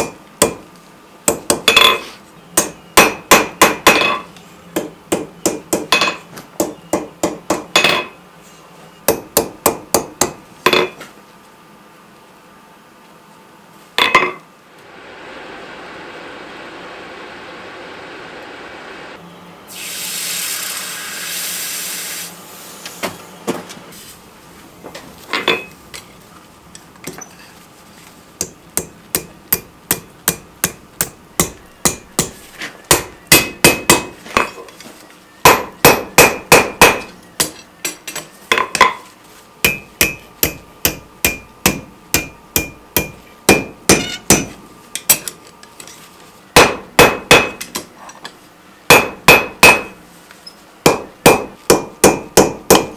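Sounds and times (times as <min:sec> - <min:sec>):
hammer striking steel on anvil: 0:02.6 - 0:08.2, 0:09.1 - 0:11.0, 0:28.4 - 0:34.6, 0:35.4 - 0:37.6, 0:39.6 - 0:45.2, 0:46.6 - 0:47.9, 0:48.9 - 0:50.0, 0:50.9 - 0:52.9.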